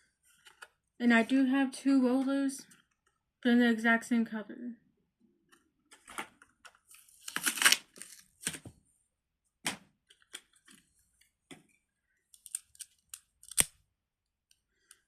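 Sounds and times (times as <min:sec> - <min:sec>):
plastic toy clicks: 0:12.4 - 0:13.8.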